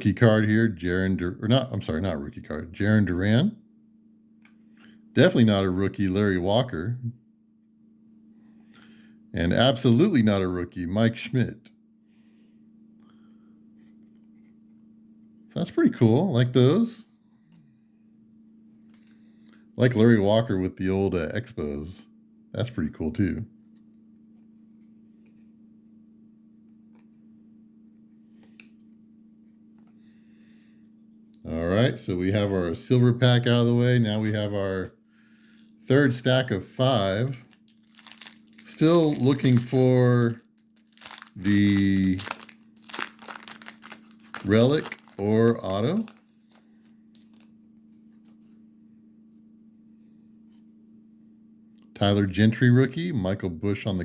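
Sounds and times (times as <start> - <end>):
low electrical hum: 0.0 - 54.0
trading cards handled: 37.0 - 48.6.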